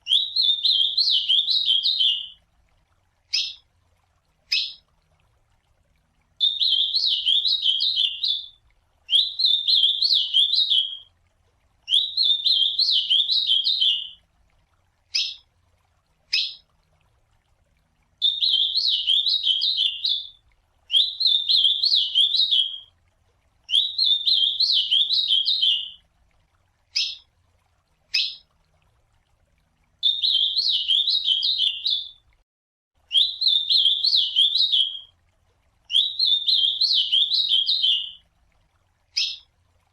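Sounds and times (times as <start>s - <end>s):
bird singing warbling phrases: 0.0s - 2.4s, 3.3s - 3.6s, 4.5s - 4.8s, 6.4s - 11.1s, 11.9s - 14.2s, 15.1s - 15.4s, 16.3s - 16.7s, 18.2s - 22.9s, 23.7s - 26.0s, 27.0s - 27.3s, 28.1s - 28.5s, 30.0s - 32.2s, 33.1s - 35.1s, 35.9s - 38.2s, 39.1s - 39.5s.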